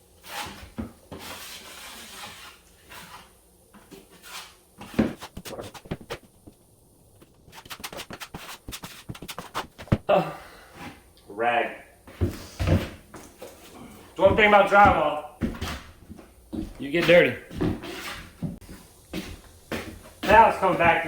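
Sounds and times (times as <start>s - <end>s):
rustling and rubbing: 4.0s - 10.1s.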